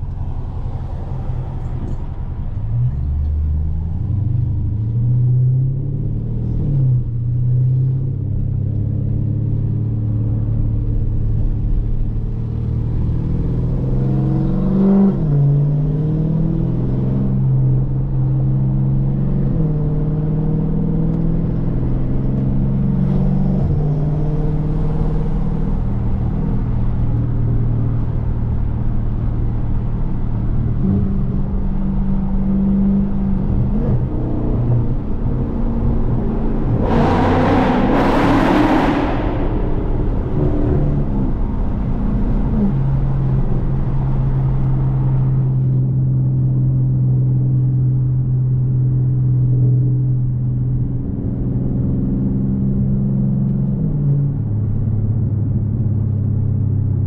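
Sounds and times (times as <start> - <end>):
car exhaust accelerating: 20.0 - 57.0.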